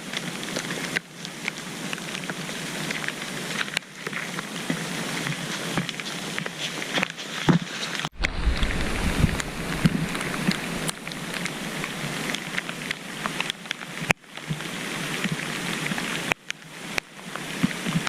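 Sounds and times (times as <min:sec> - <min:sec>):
rain: 0:00.0 - 0:18.0
wind buffeting microphone: 0:08.1 - 0:13.3.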